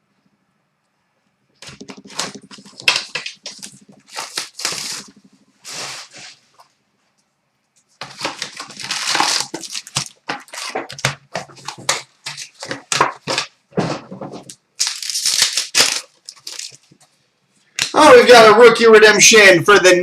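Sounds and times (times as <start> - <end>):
cards shuffled by hand: 1.6 - 6.4, 8.0 - 13.5, 14.1 - 17.0
foil wrappers tearing and crinkling: 1.7 - 6.4, 8.0 - 13.6, 14.4 - 16.9.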